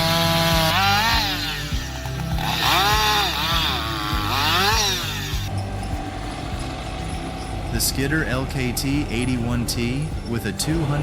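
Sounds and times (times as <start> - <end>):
chainsaw cutting wood: 0.0 - 7.7
background music with steady beat: 0.0 - 11.0.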